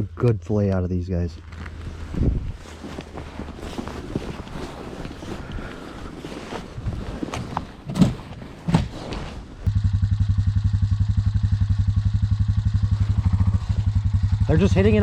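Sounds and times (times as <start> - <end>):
wind noise: 1.7 - 8.4
small engine idling: 9.7 - 15.0.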